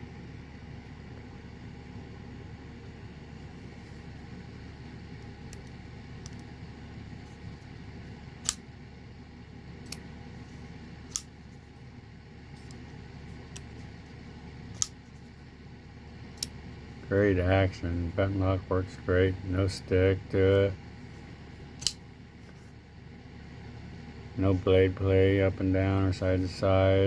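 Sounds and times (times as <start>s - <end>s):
low hum: 0.0s - 27.0s
folding knife blade clicks: 21.8s - 22.0s.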